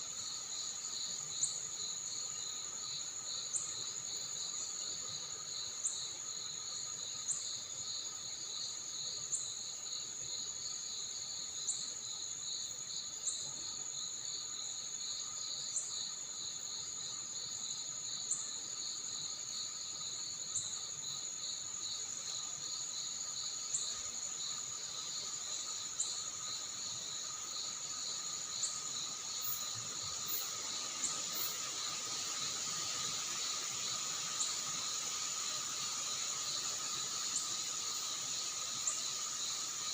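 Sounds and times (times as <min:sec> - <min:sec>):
insect high continuous whine: 0:00.0 - 0:39.9
insect trilling in rapid pulses: 0:25.6 - 0:39.9.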